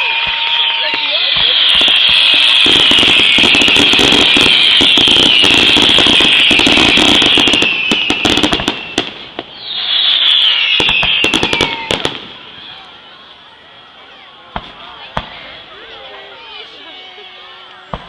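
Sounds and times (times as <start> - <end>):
fireworks crackling pops: 0.0 - 12.6, 14.5 - 15.6, 17.6 - 18.0
fireworks hissing and whistling: 0.0 - 13.2.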